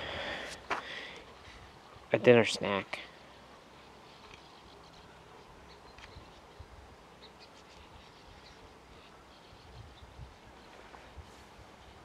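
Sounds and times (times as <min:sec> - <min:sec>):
faint bird chirps: 0:03.1 - 0:12.0.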